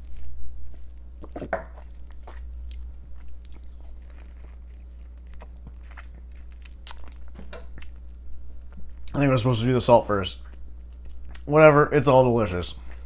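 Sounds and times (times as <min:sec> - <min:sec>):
person gulping: 0:01.2 - 0:02.4.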